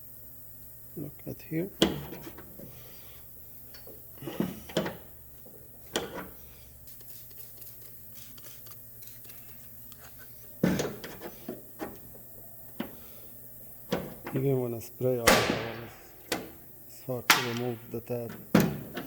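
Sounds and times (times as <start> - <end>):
tools clicking on metal panel: 5.9 - 6.3, 17.3 - 19.0.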